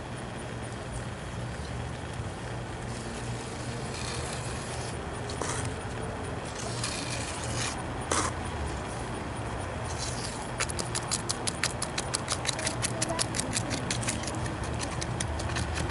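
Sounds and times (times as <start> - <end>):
low engine-like hum: 0.0 - 15.9
short scraping noises: 6.5 - 8.5.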